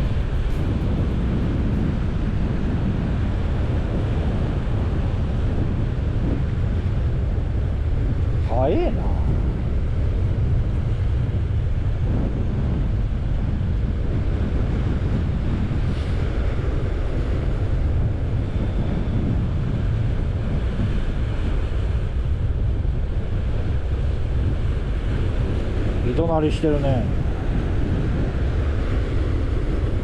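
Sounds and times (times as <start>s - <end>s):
surf on rocks: 0.0s - 4.9s
wind buffeting microphone: 0.0s - 30.0s.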